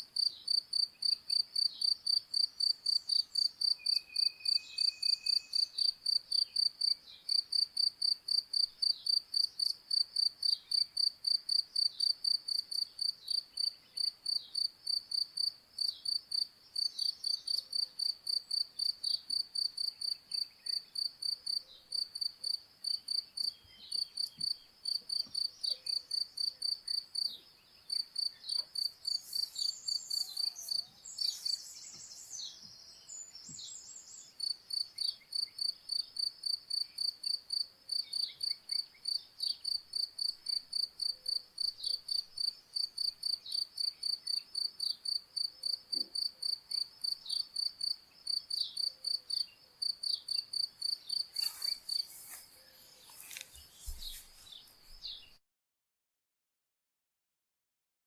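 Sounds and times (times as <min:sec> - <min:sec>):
cricket chirping: 0:00.2 - 0:55.1
bird calls and chirps: 0:03.0 - 0:05.9, 0:23.2 - 0:35.7, 0:48.2 - 0:55.4.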